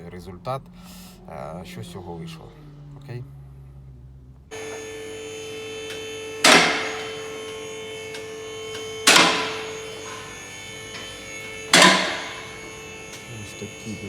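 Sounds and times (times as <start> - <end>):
ringing struck notes: 4.5 - 14.0
steady drone: 4.5 - 14.0.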